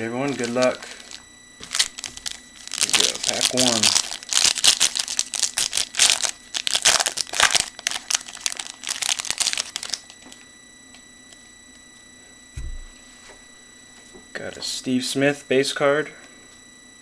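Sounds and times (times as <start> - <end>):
wrapper tearing and crinkling: 0.2 - 10.3
soft low bump: 12.6 - 13.0.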